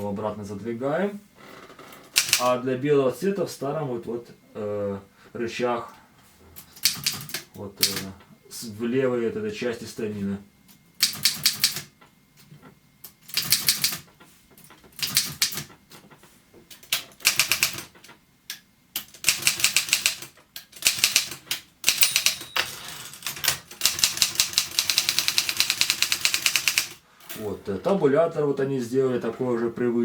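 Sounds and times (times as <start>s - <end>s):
typewriter keystrokes: 2.1s - 2.5s, 6.8s - 8.1s, 11.0s - 11.9s, 13.3s - 14.1s, 15.0s - 15.7s, 16.7s - 18.1s, 19.0s - 27.4s.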